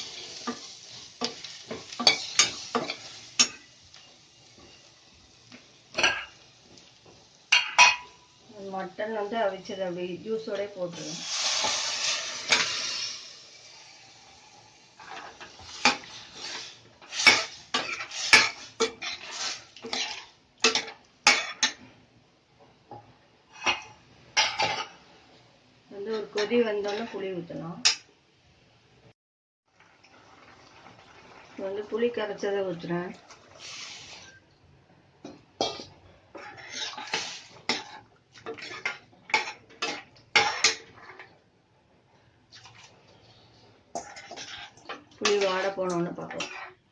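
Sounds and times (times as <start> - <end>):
metal spoon scraping a pan: 0.0 - 4.8, 11.0 - 13.2, 15.0 - 21.8, 35.6 - 41.3, 44.0 - 46.8
pan sizzling: 0.0 - 21.9, 29.7 - 41.6, 42.6 - 46.9.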